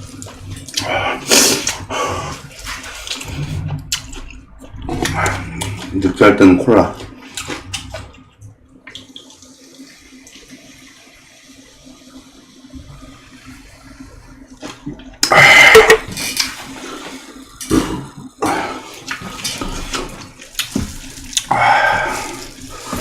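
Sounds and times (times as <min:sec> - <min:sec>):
loud noisy liquid sound: 0:00.0 - 0:23.0
cola fizzing: 0:08.7 - 0:23.0.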